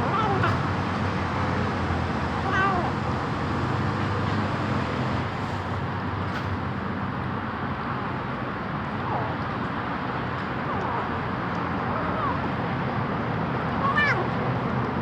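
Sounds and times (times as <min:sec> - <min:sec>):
faint kitten mew: 0:02.4 - 0:03.0, 0:13.8 - 0:14.4.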